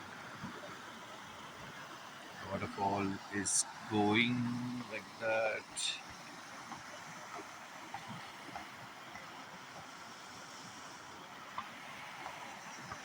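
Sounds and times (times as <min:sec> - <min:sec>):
waterfall rushing: 0:01.1 - 0:09.0.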